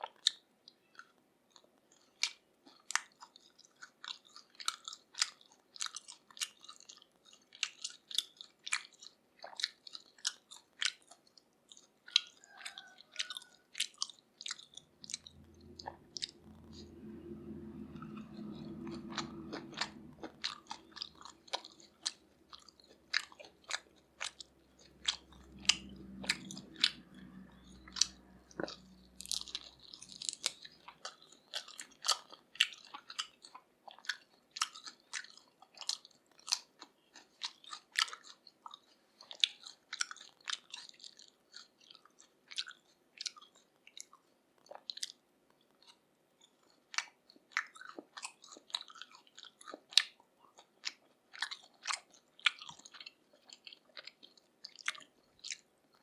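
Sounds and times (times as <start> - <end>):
close-miked chewing and crunching: 0.0 - 56.0
low hum: 14.7 - 31.2.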